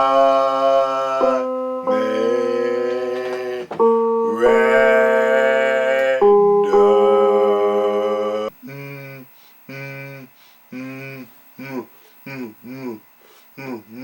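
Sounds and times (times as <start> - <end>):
deeper voice singing short notes: 0.0 - 8.8
person singing long notes: 0.0 - 13.0.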